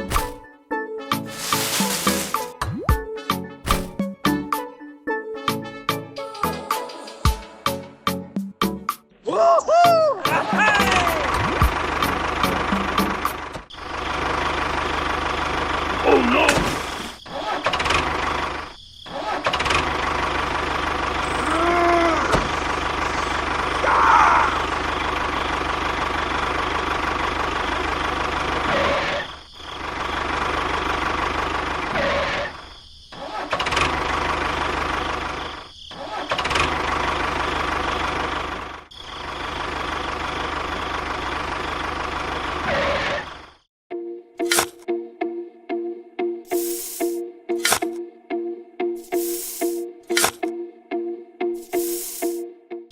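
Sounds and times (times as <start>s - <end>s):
motor droning: 20.9s - 25.6s.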